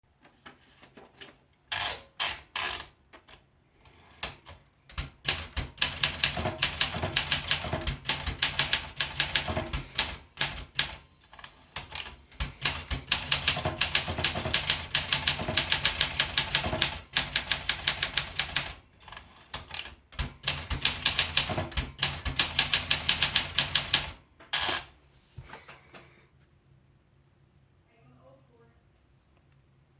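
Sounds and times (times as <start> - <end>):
manual typewriter keystrokes: 4.2 - 24.9.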